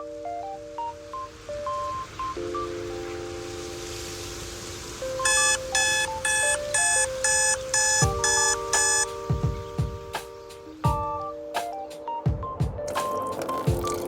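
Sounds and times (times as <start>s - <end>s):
synth chords music: 0.0s - 14.0s
alarm clock beeping: 5.2s - 9.1s.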